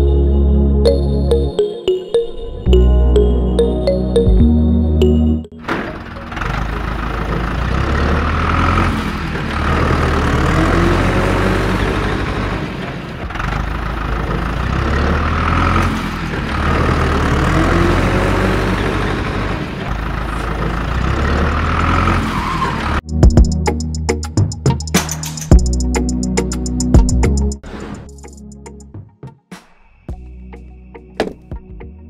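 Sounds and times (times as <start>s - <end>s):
vehicle engine running: 5.0s - 22.4s.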